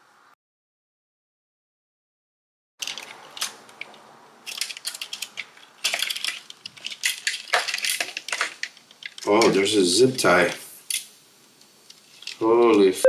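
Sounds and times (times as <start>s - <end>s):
plastic parts clicking and rattling: 2.8s - 12.9s.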